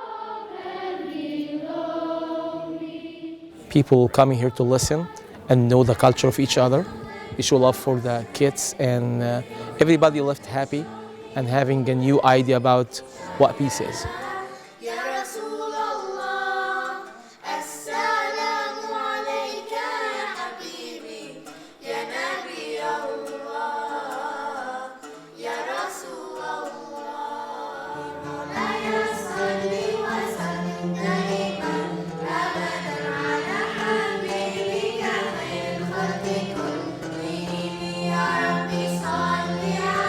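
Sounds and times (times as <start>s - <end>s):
choir singing: 0.0s - 40.0s
low held accompaniment: 28.0s - 40.0s.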